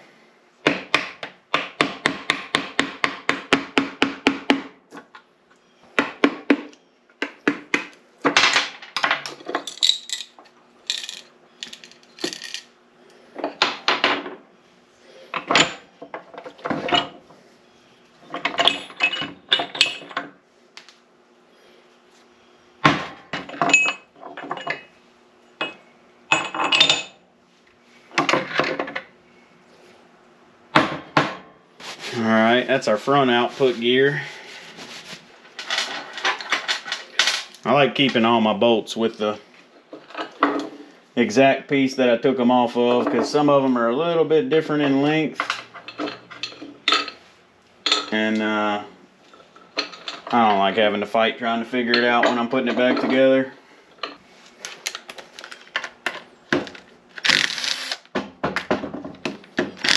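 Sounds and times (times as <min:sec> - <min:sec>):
tools clanking and knocking: 0:06.0 - 0:12.7, 0:15.3 - 0:17.3, 0:18.2 - 0:20.4, 0:22.9 - 0:24.9, 0:28.1 - 0:29.1, 0:35.6 - 0:37.6, 0:45.4 - 0:48.2, 0:49.4 - 0:50.8, 0:51.8 - 0:53.4, 0:58.1 - 0:59.9.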